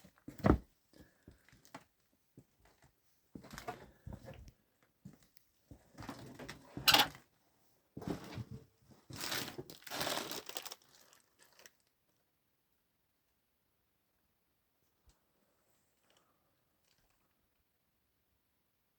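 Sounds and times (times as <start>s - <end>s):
rustling and crinkling: 0.0s - 7.3s, 8.0s - 12.0s, 15.7s - 17.5s.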